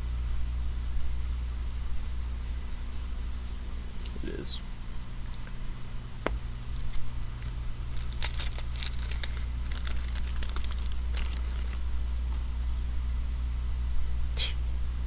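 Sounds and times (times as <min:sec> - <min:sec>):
steady low hum: 0:00.0 - 0:15.0
cards crinkling and rustling: 0:06.7 - 0:11.9.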